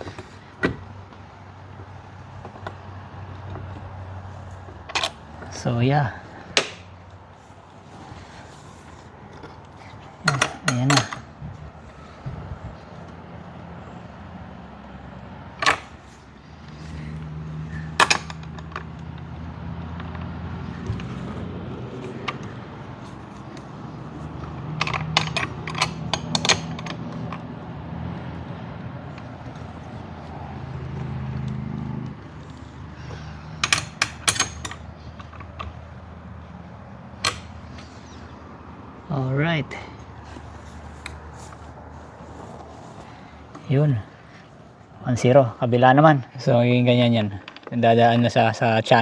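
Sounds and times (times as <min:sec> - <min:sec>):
metallic clicks of bolts handled: 0:10.3 - 0:11.3, 0:24.4 - 0:27.4, 0:33.6 - 0:35.8.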